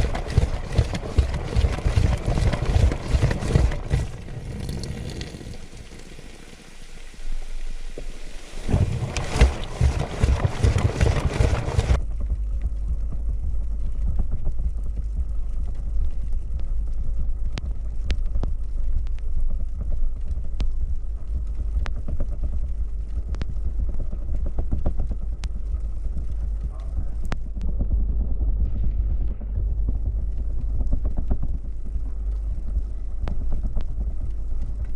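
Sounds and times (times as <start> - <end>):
washing machine water sloshing: 0.0 - 4.8, 8.6 - 12.0.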